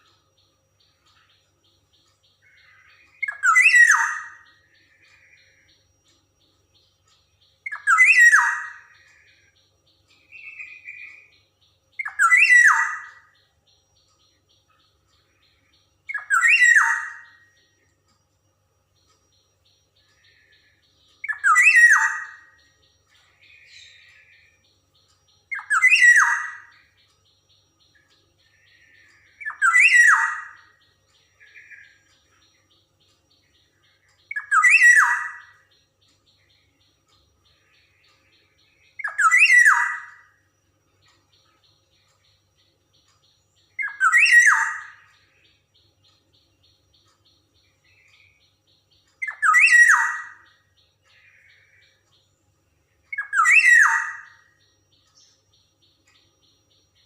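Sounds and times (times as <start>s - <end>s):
oriole calling: 2.4s - 5.7s, 7.7s - 9.4s, 12.0s - 13.3s, 16.1s - 17.4s, 25.5s - 26.9s, 28.4s - 30.8s, 33.6s - 35.6s, 37.6s - 40.3s, 43.8s - 45.4s, 49.2s - 52.0s, 53.1s - 54.6s.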